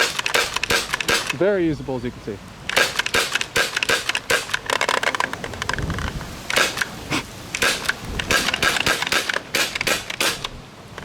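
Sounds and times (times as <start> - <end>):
paintball marker firing: 0.0 - 1.4, 2.7 - 4.7, 6.5 - 6.9, 7.6 - 10.6.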